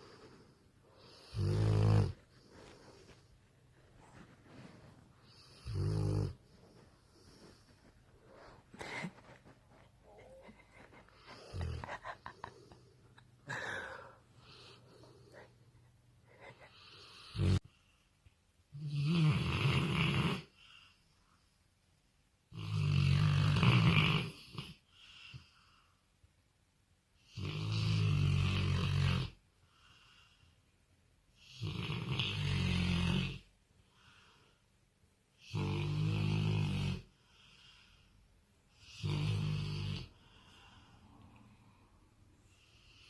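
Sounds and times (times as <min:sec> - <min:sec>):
pet snoring deeply: 0:01.0 - 0:02.3, 0:05.2 - 0:06.5, 0:16.8 - 0:17.7, 0:18.7 - 0:20.5, 0:22.5 - 0:24.8, 0:27.3 - 0:29.4, 0:31.4 - 0:33.5, 0:35.4 - 0:37.1, 0:38.8 - 0:40.2.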